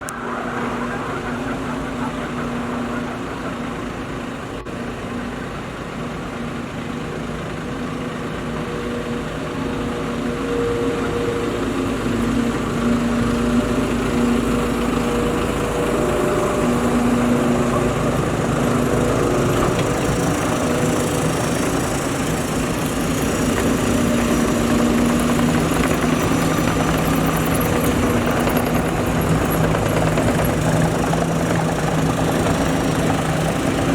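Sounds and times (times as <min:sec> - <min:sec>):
loader engine running: 0:00.0 - 0:33.9.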